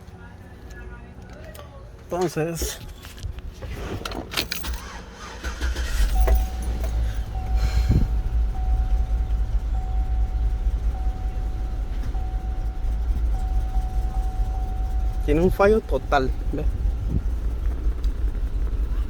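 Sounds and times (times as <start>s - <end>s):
keys jangling: 4.2s - 7.8s
misfiring car engine: 4.4s - 19.0s
electronic warning tone: 6.0s - 17.0s.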